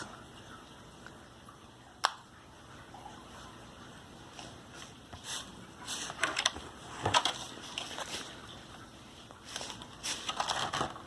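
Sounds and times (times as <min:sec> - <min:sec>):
plastic pieces clicking and rustling: 0:09.6 - 0:11.0.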